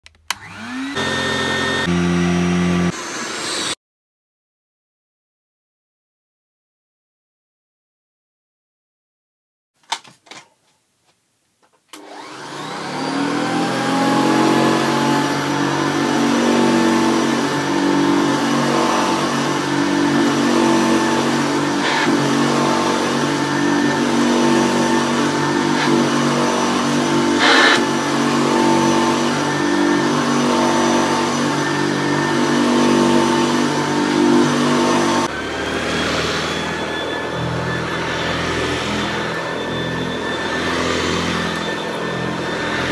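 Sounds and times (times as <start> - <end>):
vacuum cleaner switch click: 0.0 - 0.7
vacuum cleaner motor running: 0.3 - 3.8, 12.0 - 42.9.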